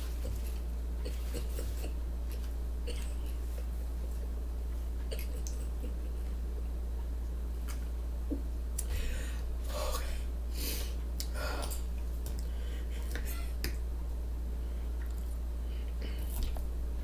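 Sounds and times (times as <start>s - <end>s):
low electrical hum: 0.0s - 17.0s
soft mouth clicks: 11.2s - 11.4s.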